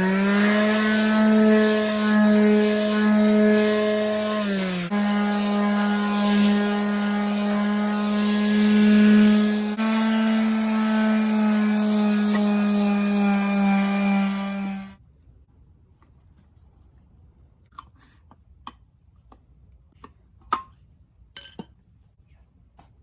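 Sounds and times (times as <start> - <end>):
power tool whining: 0.0 - 15.0.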